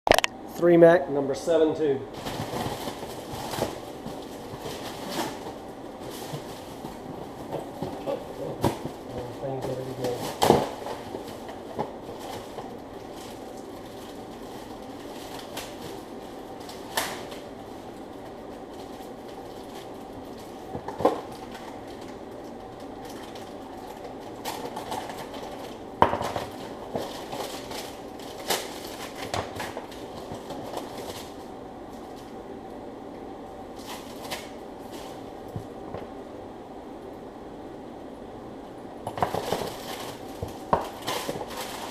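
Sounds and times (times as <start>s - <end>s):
steady background hum: 0.1s - 41.9s.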